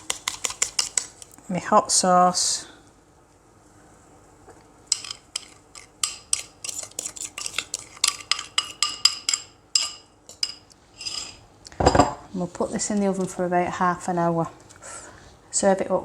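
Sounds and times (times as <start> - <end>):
spoon scraping a dish: 4.9 - 11.4.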